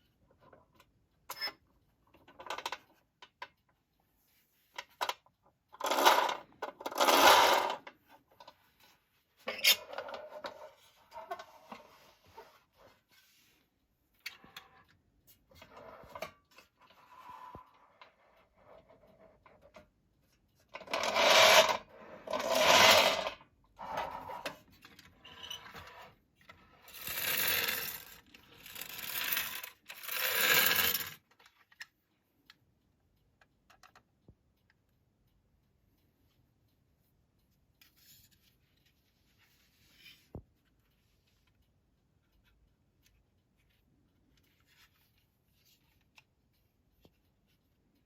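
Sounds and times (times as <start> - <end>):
metallic clicks and scrapes: 20.6 - 32.0, 37.7 - 46.2.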